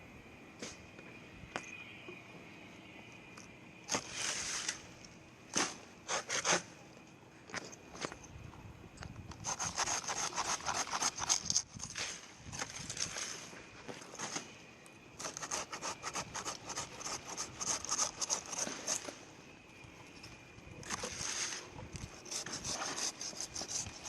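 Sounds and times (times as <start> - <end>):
hand saw cutting palm fronds: 5.6 - 6.6, 9.4 - 12.2, 15.2 - 19.2.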